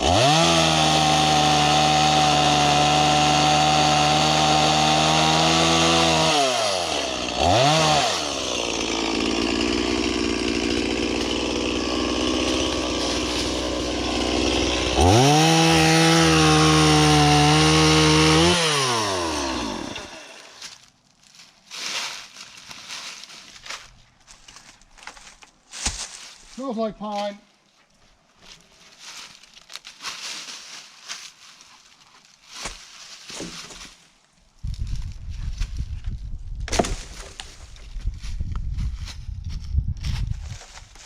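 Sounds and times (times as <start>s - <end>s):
chainsaw revving: 0.0s - 20.6s.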